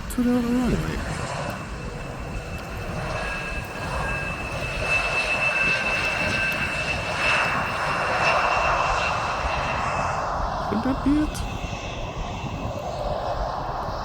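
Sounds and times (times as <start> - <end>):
jet engines whining: 0.0 - 14.0.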